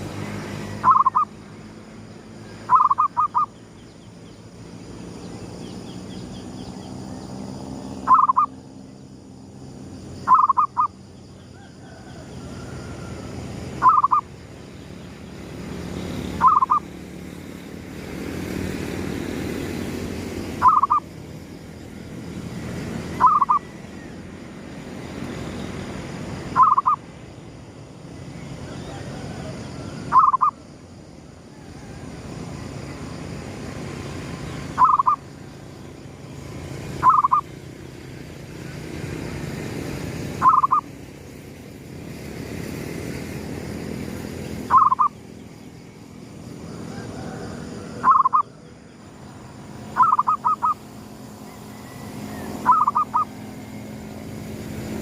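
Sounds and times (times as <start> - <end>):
dove cooing: 0.8 - 1.3, 2.7 - 3.5, 8.1 - 8.5, 10.3 - 10.9, 13.8 - 14.3, 16.4 - 16.9, 20.6 - 21.0, 23.2 - 23.7, 26.6 - 27.0, 28.9 - 30.6, 34.8 - 35.2, 37.0 - 37.5, 40.4 - 40.8, 44.7 - 45.1, 46.9 - 48.5, 50.0 - 50.8, 52.6 - 53.3.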